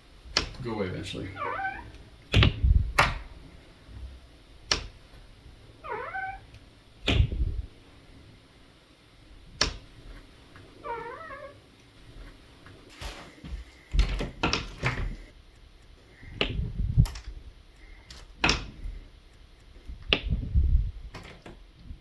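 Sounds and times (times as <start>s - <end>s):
door hinge squeaking: 1.3s - 3.2s, 5.8s - 7.4s, 10.8s - 11.6s.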